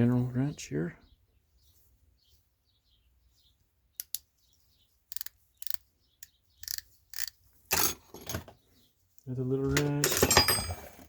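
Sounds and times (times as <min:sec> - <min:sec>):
metal hand tools clinking: 0:10.0 - 0:11.0.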